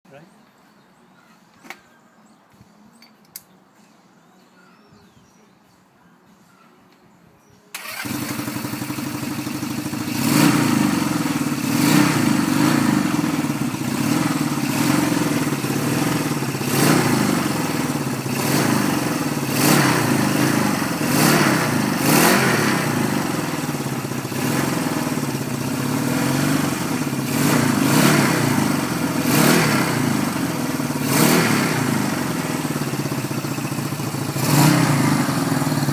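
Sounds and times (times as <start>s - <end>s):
motorcycle engine starting and revving: 7.7s - 35.9s.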